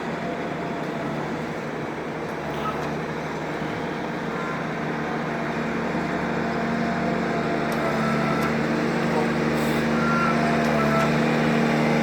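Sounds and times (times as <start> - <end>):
heavy vehicle engine running: 0.0 - 12.0.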